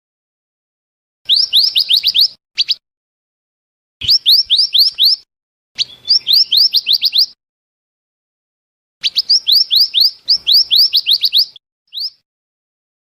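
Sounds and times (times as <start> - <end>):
bird whistled calls: 1.3 - 2.8, 4.0 - 7.4, 9.0 - 12.2.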